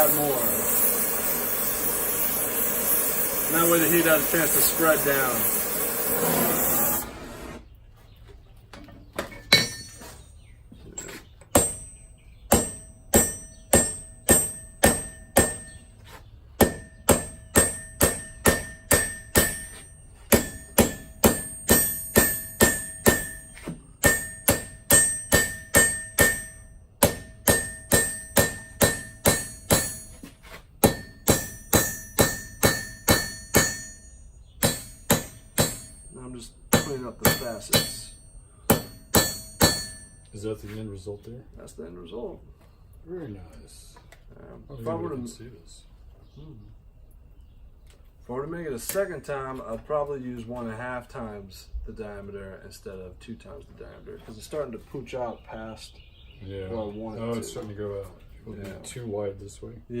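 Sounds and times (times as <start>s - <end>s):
heating torch rushing: 0.0s - 7.7s
hammer striking hot metal rivet: 9.5s - 10.1s, 11.5s - 15.8s, 16.6s - 40.4s.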